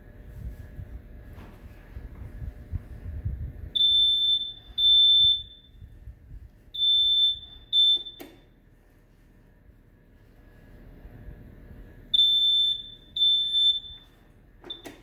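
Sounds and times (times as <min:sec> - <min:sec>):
door alarm high-pitched beeps: 0:03.8 - 0:05.9, 0:06.8 - 0:08.5, 0:12.1 - 0:15.0.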